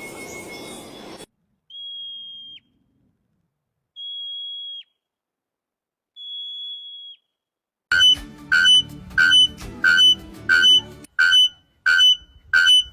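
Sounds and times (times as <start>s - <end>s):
bird whistled call: 1.7s - 2.7s, 4.0s - 5.0s.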